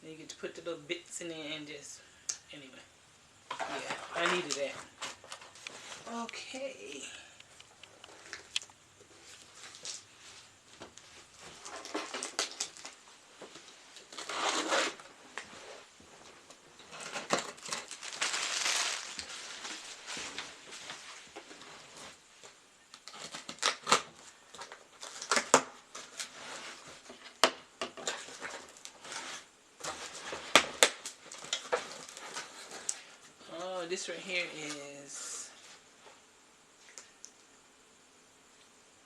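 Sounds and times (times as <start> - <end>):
packaging rustling and crumpling: 3.5 - 6.2, 9.2 - 27.4, 28.0 - 33.3.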